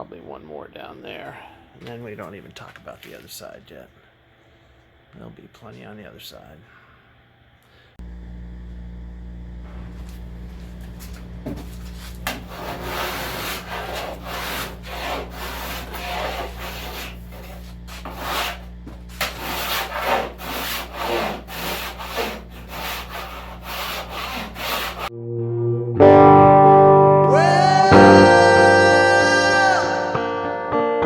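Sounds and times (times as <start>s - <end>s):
steady low hum: 0.0s - 25.4s
hand sanding rasping strokes: 9.7s - 25.1s.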